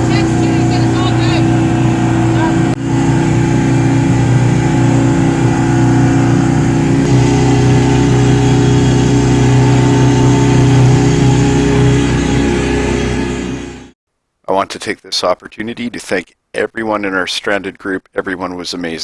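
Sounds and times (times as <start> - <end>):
vehicle engine running: 0.0 - 14.0.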